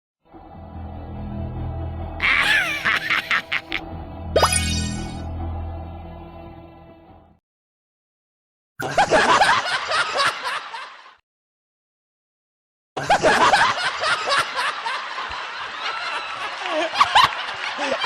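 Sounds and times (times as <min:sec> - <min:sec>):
crowd laughing: 0:02.2 - 0:03.9, 0:08.8 - 0:11.2, 0:13.0 - 0:18.0.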